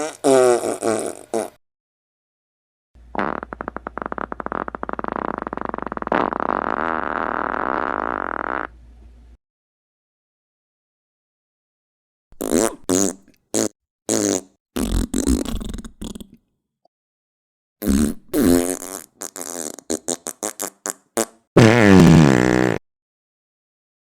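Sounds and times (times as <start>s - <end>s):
fart sounds: 0.0s - 1.6s, 3.1s - 8.8s, 12.4s - 16.4s, 17.8s - 22.8s.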